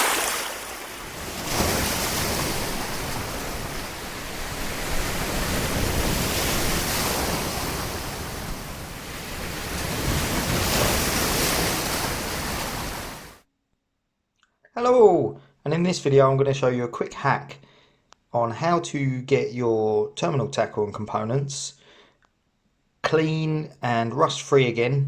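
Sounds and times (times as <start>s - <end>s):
sea waves washing in: 0.0s - 13.4s.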